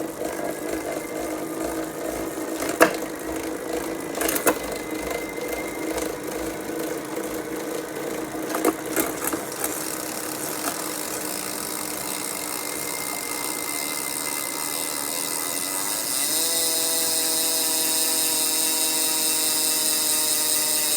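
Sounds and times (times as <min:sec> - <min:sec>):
higher whine: 0:00.0 - 0:11.7
bicycle drivetrain whine: 0:00.0 - 0:20.9
drivetrain clicks: 0:00.1 - 0:13.6.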